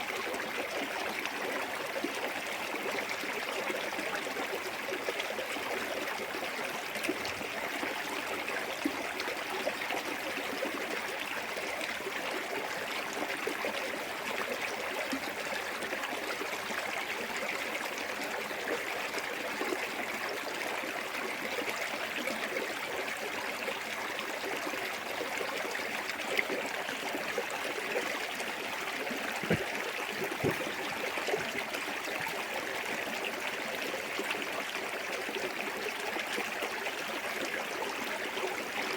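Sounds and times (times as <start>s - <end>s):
waterfall running and splashing: 27.4s - 32.7s.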